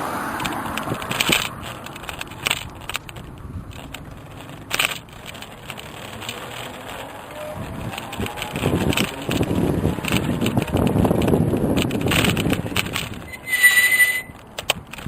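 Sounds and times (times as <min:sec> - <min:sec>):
bicycle clattering over bumps: 0:00.0 - 0:15.0
road and wind noise: 0:00.0 - 0:15.0
wind buffeting: 0:07.4 - 0:13.6.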